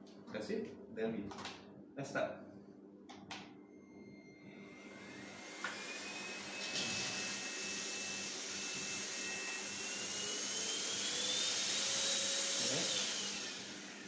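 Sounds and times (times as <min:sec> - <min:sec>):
vacuum cleaner running: 0:03.8 - 0:14.0.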